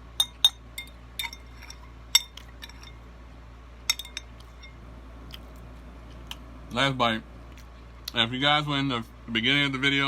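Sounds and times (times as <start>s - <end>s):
utensil clinking against a bowl: 0.2s - 3.0s, 3.8s - 4.8s.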